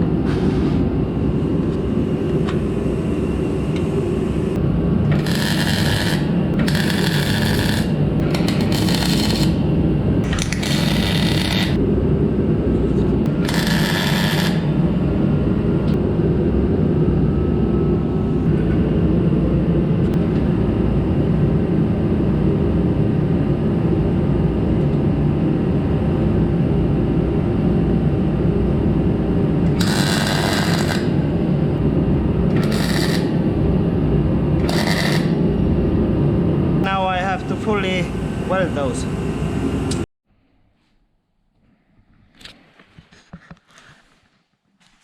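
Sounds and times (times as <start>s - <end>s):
workshop heater rumble: 0.0s - 40.1s.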